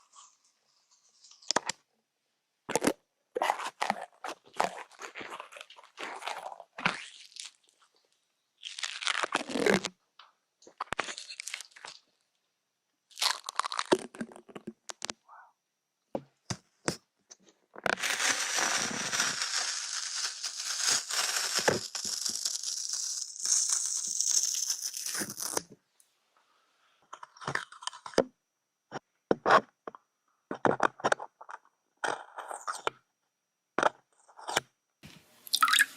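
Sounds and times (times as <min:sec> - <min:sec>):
crinkling and tearing: 0:02.7 - 0:07.9, 0:08.6 - 0:09.9, 0:10.7 - 0:12.0, 0:13.1 - 0:15.2, 0:17.8 - 0:25.7.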